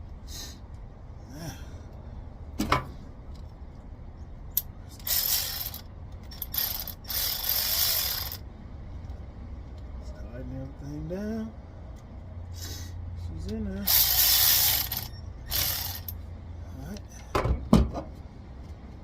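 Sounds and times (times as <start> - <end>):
ratchet wrench ratcheting: 4.6 - 8.4, 13.8 - 16.2.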